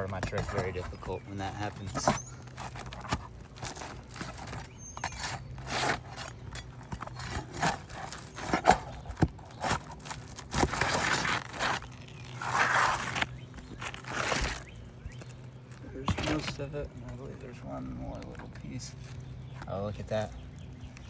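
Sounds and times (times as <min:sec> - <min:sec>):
shingle scraping and tearing: 0:00.0 - 0:21.0.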